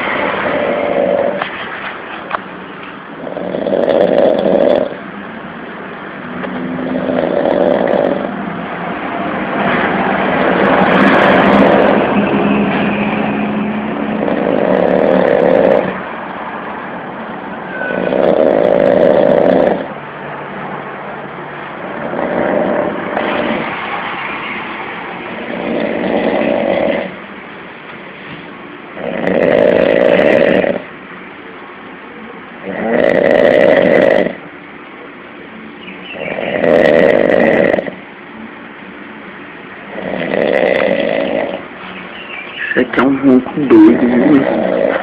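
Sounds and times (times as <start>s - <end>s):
harsh snoring: 0.0s - 1.5s, 3.2s - 5.0s, 6.6s - 8.4s, 10.4s - 12.2s, 14.0s - 16.0s, 17.7s - 20.0s, 21.8s - 23.8s, 25.3s - 27.2s, 29.0s - 30.9s, 32.6s - 34.4s, 36.2s - 38.0s, 39.9s - 41.7s, 42.8s - 45.0s.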